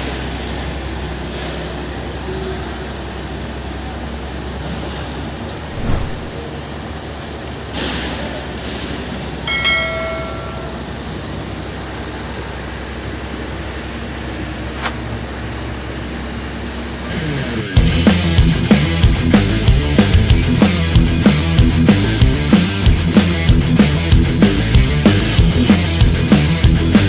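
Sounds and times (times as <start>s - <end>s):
short ringing tone: 9.5s - 11.2s.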